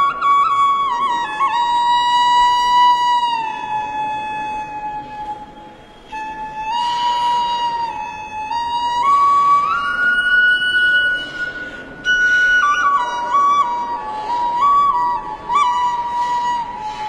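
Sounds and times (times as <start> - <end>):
flute playing slow melody: 0.0 - 17.0
breath noise: 11.3 - 12.4.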